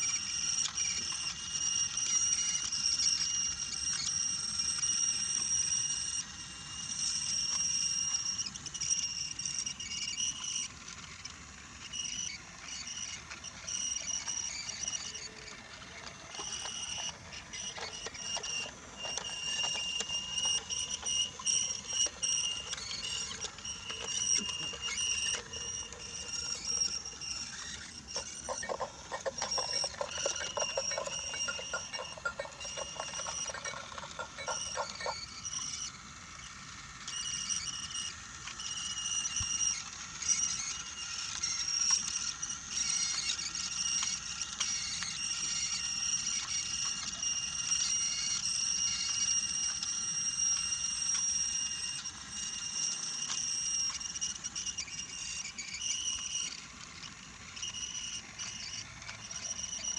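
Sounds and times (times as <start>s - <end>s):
toy train motor whining: 0.0s - 59.9s
wheels clicking over wooden rails: 13.7s - 35.4s.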